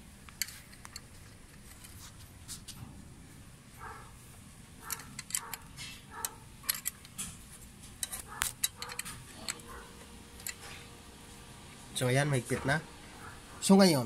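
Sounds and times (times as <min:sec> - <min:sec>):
metal tool clicking and clinking: 0:04.8 - 0:07.4, 0:08.0 - 0:09.7.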